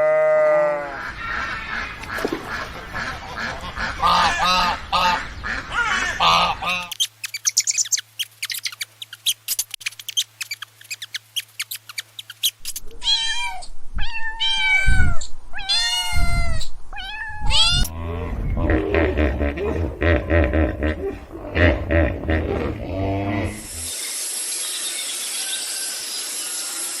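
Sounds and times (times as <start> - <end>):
geese honking: 1.0 - 7.0
cat meowing: 13.0 - 17.9
low animal sound: 17.7 - 23.9.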